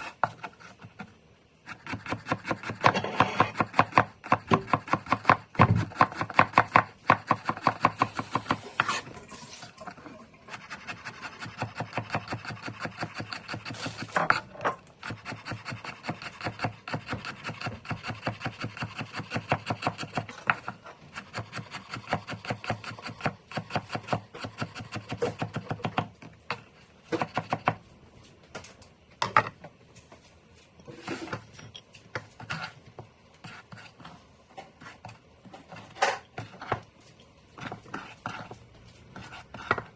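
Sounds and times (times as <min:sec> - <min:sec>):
knife chopping on wooden board: 0:01.7 - 0:09.0, 0:10.5 - 0:27.8, 0:37.6 - 0:39.9.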